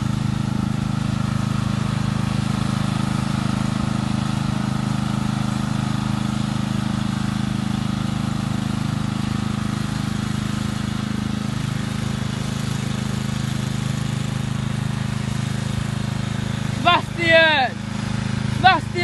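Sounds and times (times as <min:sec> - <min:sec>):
lawnmower engine running: 0:00.0 - 0:19.0.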